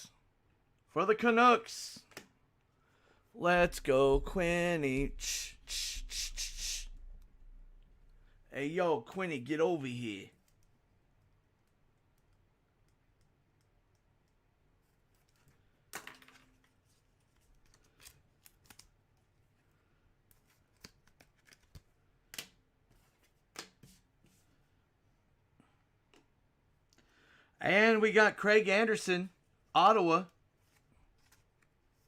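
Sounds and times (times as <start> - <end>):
trading cards rustling and clicking: 20.4 - 22.5.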